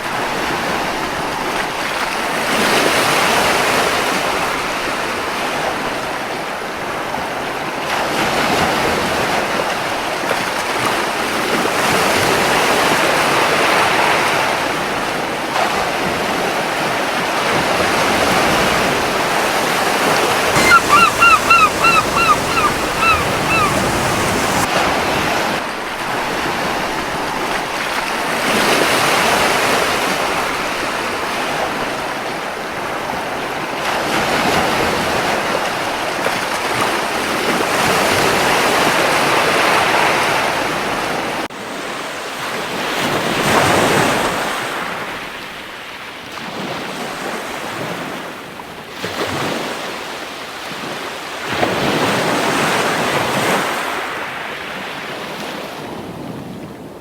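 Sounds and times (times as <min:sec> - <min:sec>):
waves breaking on a beach: 0:00.0 - 0:26.6, 0:27.4 - 0:57.0
gull calling: 0:20.5 - 0:24.7.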